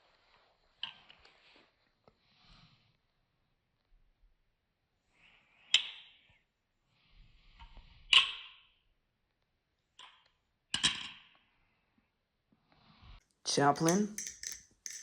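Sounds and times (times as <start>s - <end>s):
butterfly knife handles clacking: 13.6s - 15.0s.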